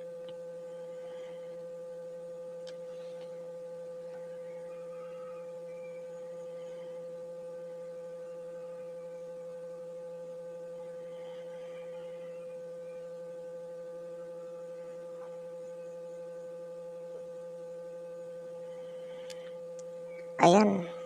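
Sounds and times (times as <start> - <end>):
steady electrical hum: 0.0 - 21.0
faint ticks: 19.2 - 20.3.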